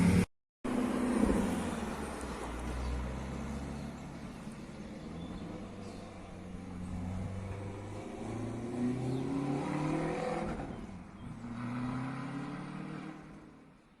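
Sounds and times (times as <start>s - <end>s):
car engine accelerating: 5.0s - 13.6s.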